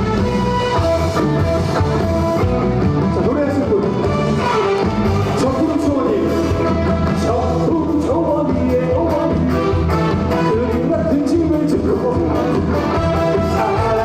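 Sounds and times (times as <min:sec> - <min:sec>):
person singing: 0:05.4 - 0:14.0.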